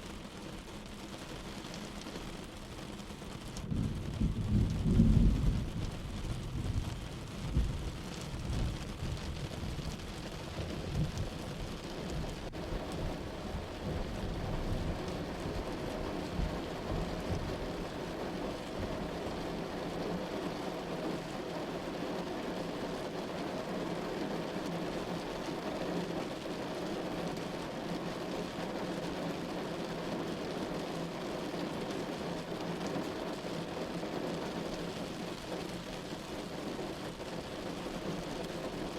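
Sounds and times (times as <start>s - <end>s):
heavy rain falling: 0.0s - 38.9s
thunder rumbling: 3.6s - 17.7s.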